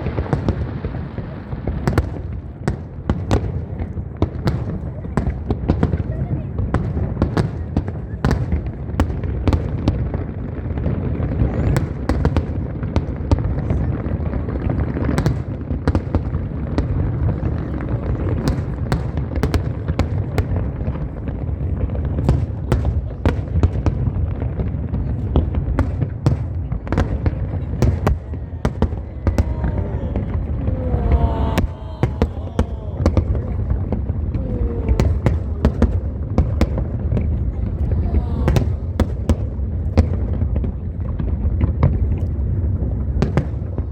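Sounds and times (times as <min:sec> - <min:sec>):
crowd murmur: 0:00.0 - 0:43.6
fireworks booming: 0:00.0 - 0:43.9
fireworks cracking: 0:00.0 - 0:43.9.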